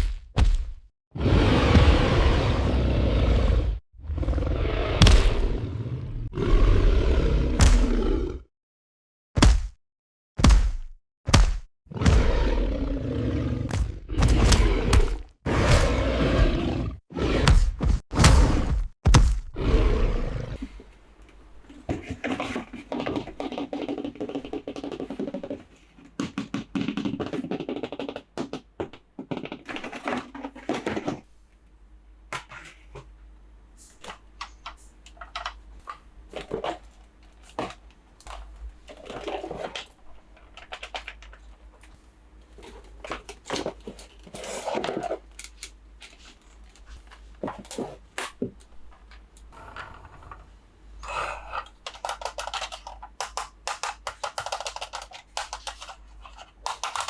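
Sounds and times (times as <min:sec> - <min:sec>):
plastic toys being handled: 0:33.8 - 0:50.5, 0:51.4 - 0:57.0.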